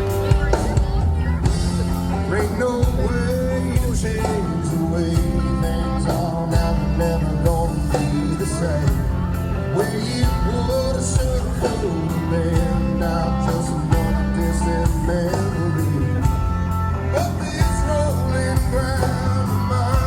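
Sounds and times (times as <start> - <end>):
bass: 0.0 - 20.0
lead guitar line with bending notes: 0.0 - 20.0
steady drum beat: 0.0 - 20.0.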